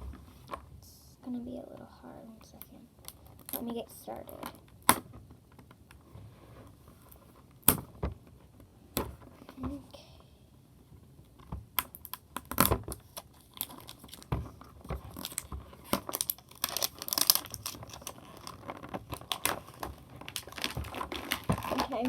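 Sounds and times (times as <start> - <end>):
plastic packaging crinkling: 3.0 - 4.8, 11.8 - 22.0.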